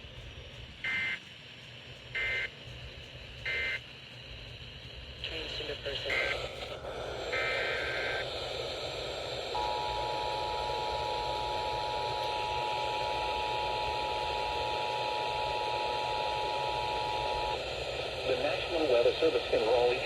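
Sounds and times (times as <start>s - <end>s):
radio static: 5.2s - 20.0s.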